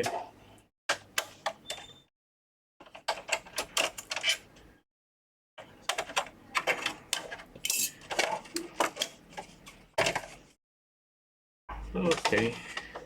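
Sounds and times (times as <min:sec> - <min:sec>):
plastic and metal parts clattering: 0:06.0 - 0:10.4, 0:12.0 - 0:13.0.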